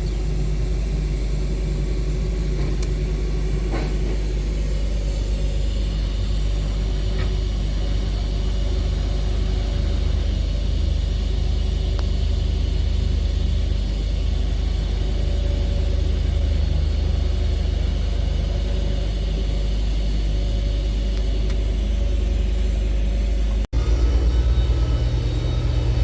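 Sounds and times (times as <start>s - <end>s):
welding hum and hiss: 0.0s - 26.0s.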